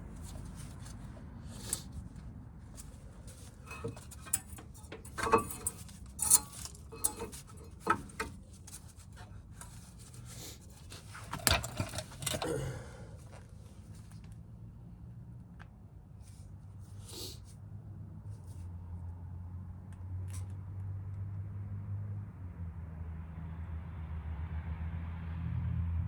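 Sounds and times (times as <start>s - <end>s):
metal parts and tools clinking: 0.2s - 2.0s, 2.8s - 12.7s.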